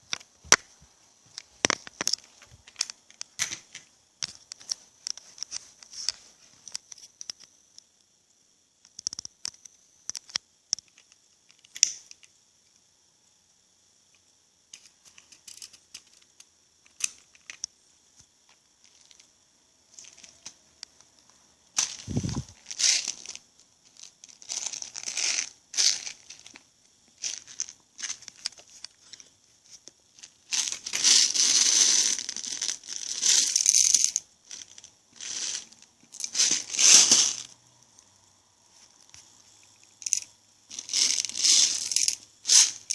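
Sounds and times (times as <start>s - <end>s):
crinkling and rustling: 0.0s - 7.5s, 18.5s - 19.3s, 19.9s - 37.6s, 38.7s - 42.9s.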